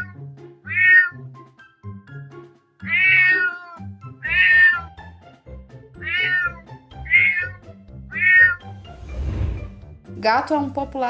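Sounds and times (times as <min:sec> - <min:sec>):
cat meowing: 0:00.0 - 0:01.2, 0:02.9 - 0:04.9, 0:06.0 - 0:07.6, 0:08.2 - 0:08.6
background music: 0:00.0 - 0:11.0.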